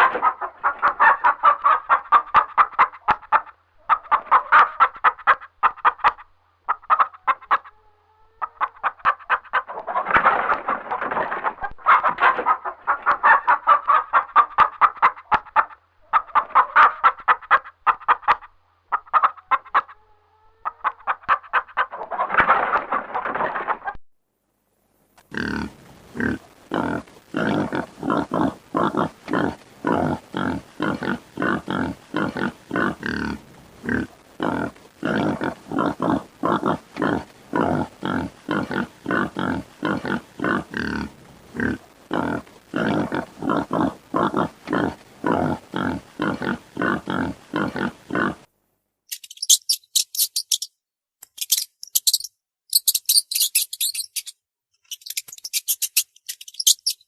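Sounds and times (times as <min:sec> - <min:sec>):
pig grunting: 0:25.3 - 0:48.5.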